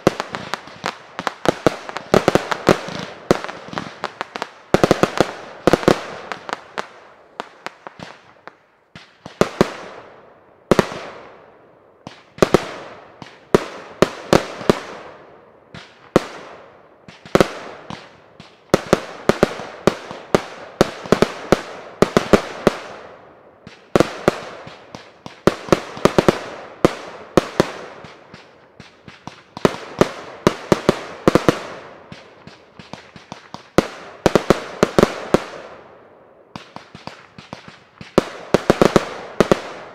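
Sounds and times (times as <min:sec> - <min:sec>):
fireworks bangs: 0:00.0 - 0:11.4, 0:12.0 - 0:35.8, 0:36.5 - 0:39.9.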